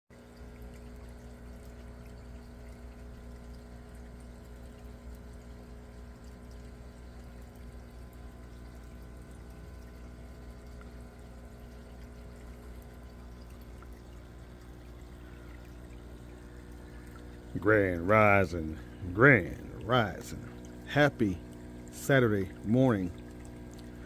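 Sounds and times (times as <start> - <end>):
water pouring into a tank: 0.1 - 24.0
low hum: 7.2 - 24.0.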